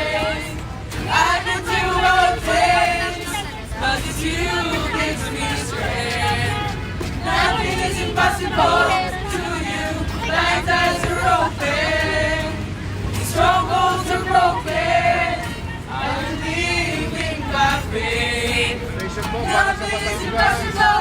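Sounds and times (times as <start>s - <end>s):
group singing worship song: 0.0s - 21.0s.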